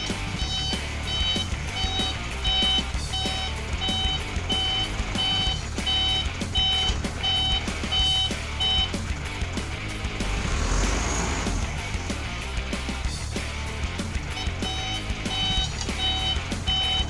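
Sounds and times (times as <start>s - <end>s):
truck reversing alarm beeping: 0.0s - 9.5s, 14.2s - 17.0s
engine rumble: 0.0s - 17.0s.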